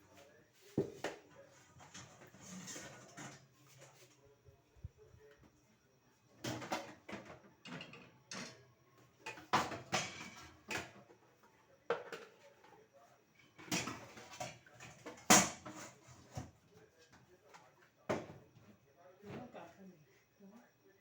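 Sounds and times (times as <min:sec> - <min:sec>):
pots and pans clattering: 0:01.6 - 0:03.5, 0:09.2 - 0:11.0, 0:13.6 - 0:16.5.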